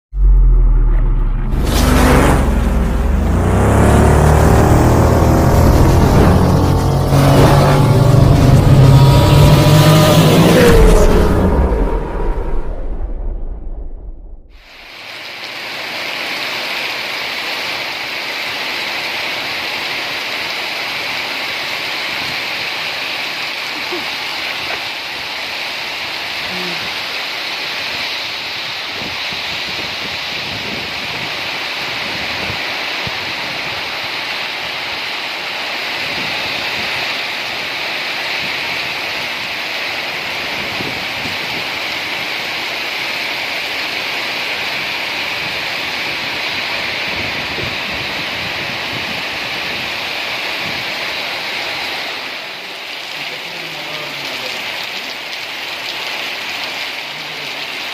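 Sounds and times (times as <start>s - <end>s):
steady rain hiss: 14.6s - 57.9s.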